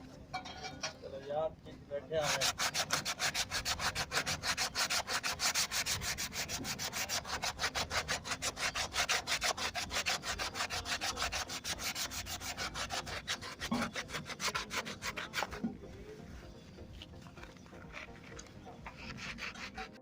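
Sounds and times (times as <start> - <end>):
hand sanding strokes: 2.2 - 15.8, 17.9 - 20.0.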